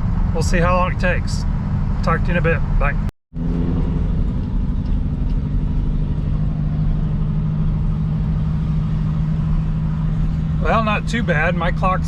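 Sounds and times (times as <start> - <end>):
truck engine drone from inside cab: 0.0 - 12.0.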